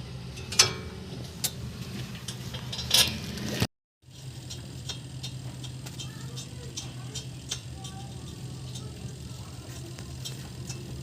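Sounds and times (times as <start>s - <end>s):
steady low hum: 0.0s - 11.0s
light ticking: 4.3s - 11.0s.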